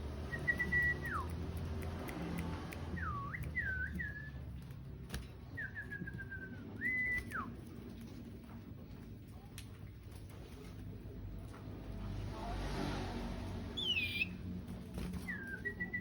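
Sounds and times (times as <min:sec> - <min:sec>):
songbird whistling: 0:00.2 - 0:01.4, 0:02.9 - 0:04.5, 0:05.5 - 0:07.6, 0:13.8 - 0:14.4, 0:15.2 - 0:16.0.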